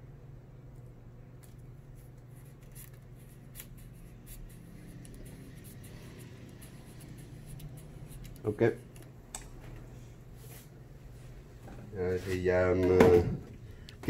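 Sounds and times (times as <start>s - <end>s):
steady low hum: 0.0s - 14.0s
adhesive tape backing peeling: 2.4s - 5.3s.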